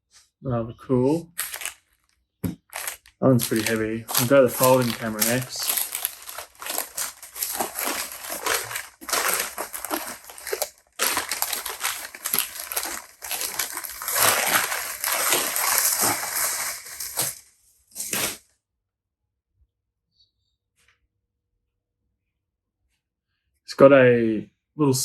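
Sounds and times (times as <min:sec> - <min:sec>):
packing material crinkling: 0:01.3 - 0:18.4.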